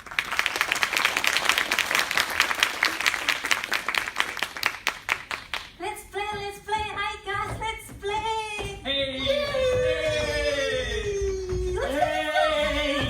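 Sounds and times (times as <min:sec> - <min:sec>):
audience applauding: 0:00.0 - 0:05.7
voices: 0:05.8 - 0:13.0.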